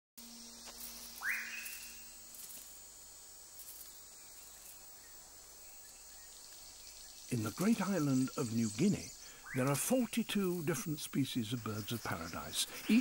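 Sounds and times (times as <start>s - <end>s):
insect chorus: 0.2s - 13.0s
rising whistled bird call: 1.2s - 2.1s.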